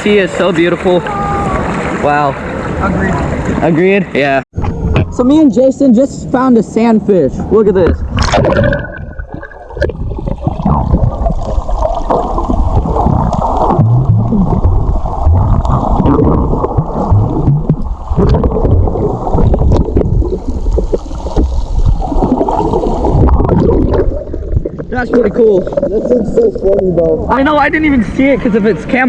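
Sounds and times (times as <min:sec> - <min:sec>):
water sloshing around camera: 0:07.8 - 0:26.8.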